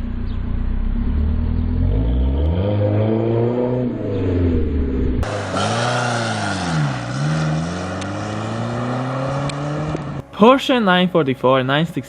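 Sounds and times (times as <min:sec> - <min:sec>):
car engine idling and revving: 0:00.0 - 0:10.3.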